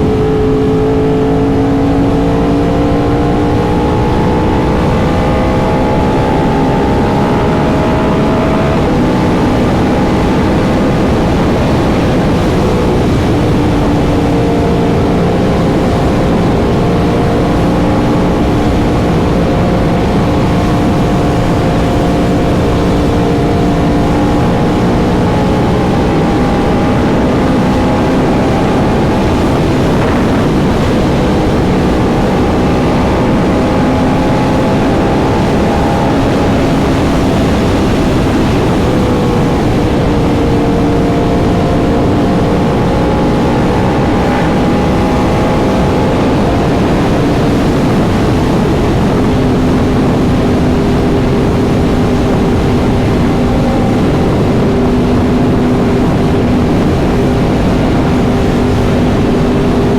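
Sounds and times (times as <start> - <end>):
motorcycle engine running: 0.0 - 59.9
low rush of noise: 18.5 - 42.4.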